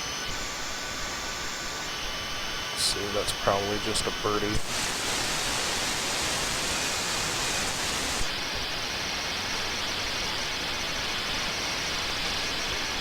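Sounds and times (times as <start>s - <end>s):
radio static hiss: 2.7s - 8.7s.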